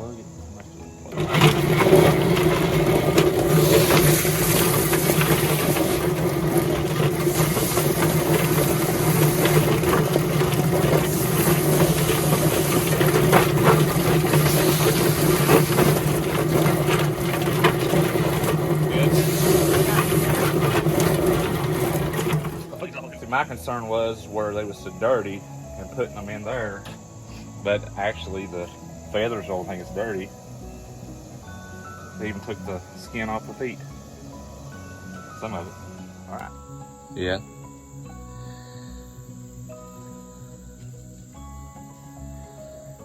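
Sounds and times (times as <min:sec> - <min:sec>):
chicken plucker motor hum: 0:01.0 - 0:23.1
chicken rattling inside plucker: 0:01.1 - 0:22.8.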